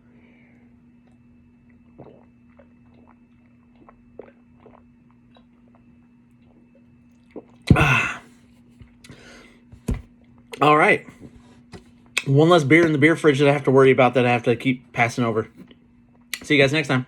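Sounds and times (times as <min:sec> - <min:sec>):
man swallowing: 0:02.0 - 0:02.3, 0:07.3 - 0:08.4
man exhaling loudly: 0:07.7 - 0:08.3.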